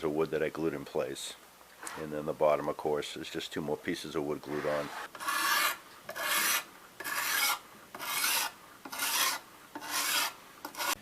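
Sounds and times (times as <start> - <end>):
sharpening stone rasping on blade: 5.1 - 11.0.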